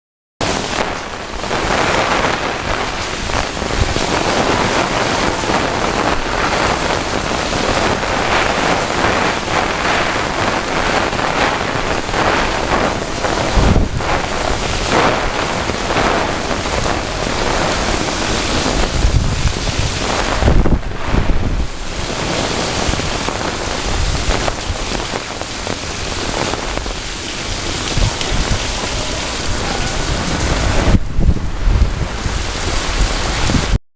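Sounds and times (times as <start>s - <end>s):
strong gusty wind on microphone: 0.4s - 33.8s.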